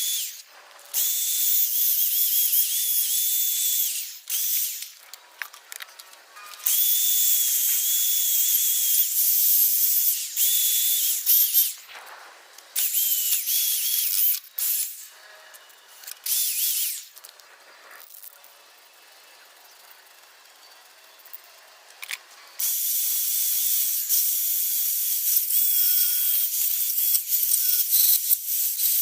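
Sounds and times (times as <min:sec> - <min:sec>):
spray paint can hissing: 0:22.6 - 0:29.0.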